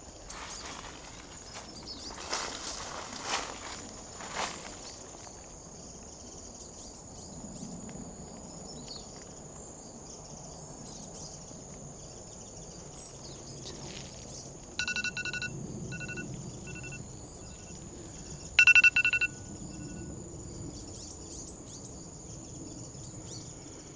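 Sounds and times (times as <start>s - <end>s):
low outdoor rumble: 0.0s - 6.6s
insects trilling: 0.0s - 23.9s.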